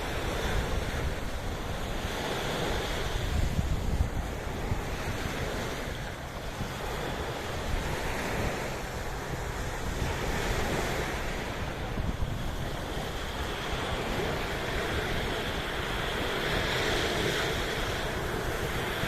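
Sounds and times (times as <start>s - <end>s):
sea waves washing ashore: 0.0s - 19.0s
wind buffeting microphone: 0.0s - 19.0s.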